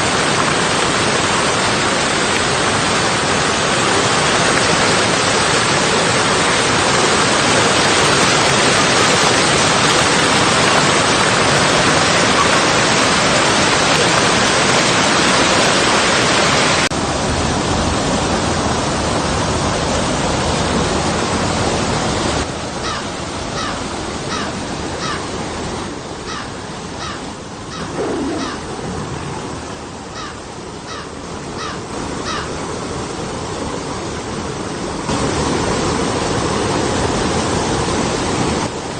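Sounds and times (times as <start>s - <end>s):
river water rushing over rocks: 0.0s - 38.9s
bird calling short notes: 26.3s - 28.8s.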